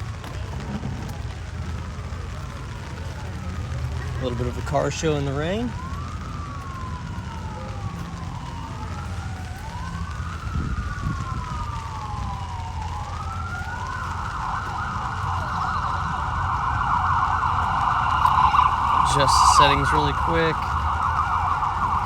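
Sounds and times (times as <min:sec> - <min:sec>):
emergency vehicle siren wailing: 0:00.0 - 0:22.0
low rumble: 0:10.4 - 0:22.0.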